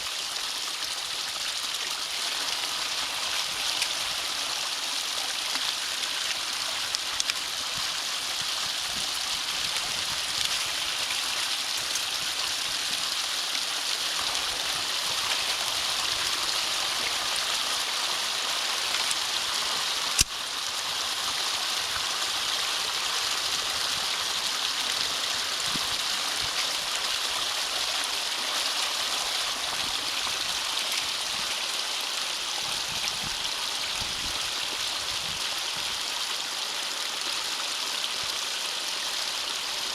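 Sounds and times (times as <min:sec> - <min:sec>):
water rushing through culvert: 0:00.0 - 0:39.9.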